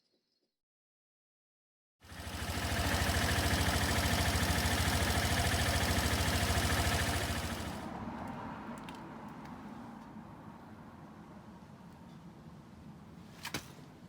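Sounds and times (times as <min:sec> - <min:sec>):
scooter engine idling: 0:02.0 - 0:08.0.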